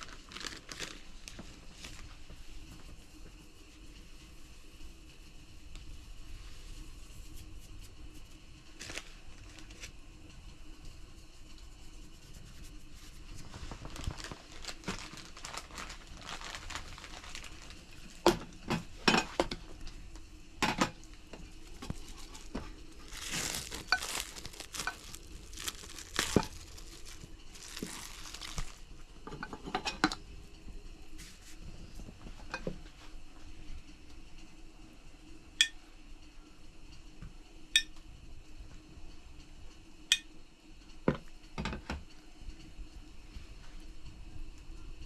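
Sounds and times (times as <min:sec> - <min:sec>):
packaging crinkling: 0:00.0 - 0:02.0, 0:08.8 - 0:09.9, 0:13.5 - 0:18.1, 0:21.7 - 0:28.9
dishes and utensils clinking: 0:29.3 - 0:30.2.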